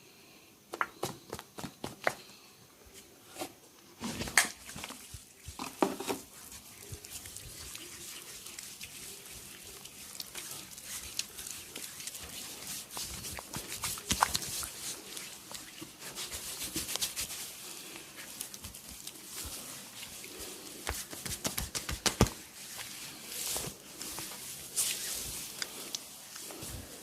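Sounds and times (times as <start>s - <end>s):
hands rubbing over skin: 4.6s - 27.0s
massage clicks and smacks: 20.8s - 22.4s.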